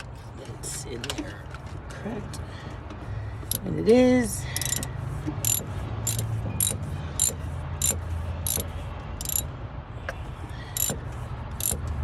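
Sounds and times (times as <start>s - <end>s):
ratchet wrench clicking: 3.5s - 3.7s, 4.6s - 9.5s, 10.7s - 12.0s.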